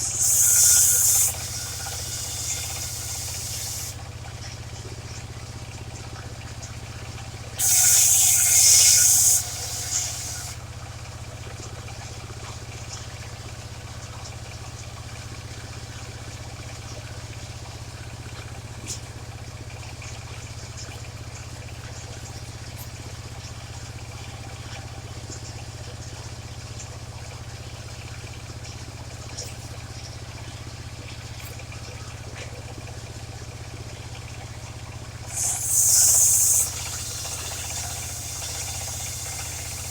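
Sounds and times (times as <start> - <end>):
saw cutting wood: 0.0 - 4.0, 7.6 - 10.6, 35.3 - 39.9
sawmill engine running: 0.0 - 4.2, 7.4 - 10.8, 34.8 - 39.9.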